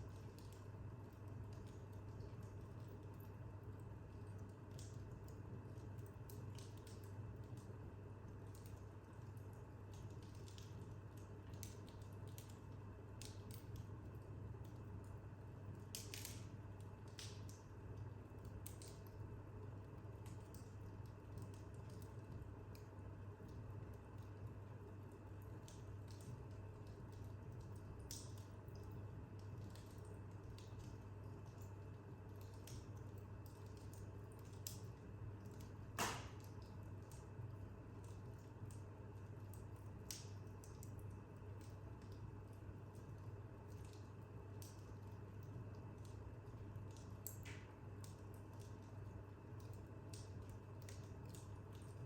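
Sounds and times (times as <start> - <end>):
low steady hum: 0.0 - 52.0
wood fire crackling and popping: 0.0 - 52.0
sharp pop of fire: 36.0 - 36.5.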